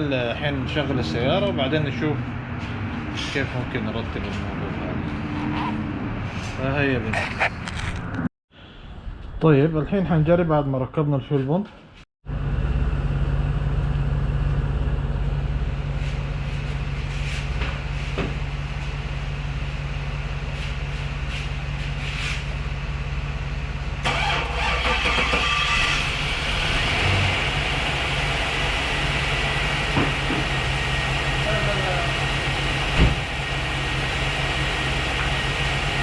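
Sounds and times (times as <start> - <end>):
car engine running: 12.3 - 36.0.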